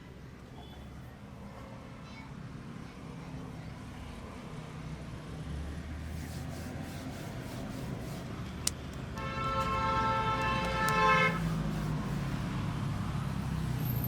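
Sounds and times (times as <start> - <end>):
street traffic rumbling: 0.1 - 14.0
sharp click: 8.6 - 9.8
vehicle horn honking: 9.2 - 11.5.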